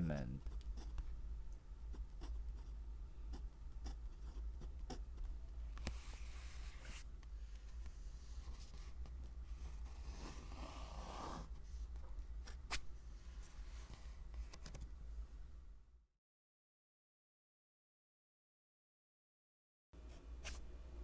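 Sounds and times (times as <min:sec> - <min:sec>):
low steady hum: 0:00.0 - 0:16.0
pen scratching on paper: 0:01.9 - 0:05.1, 0:09.6 - 0:11.5.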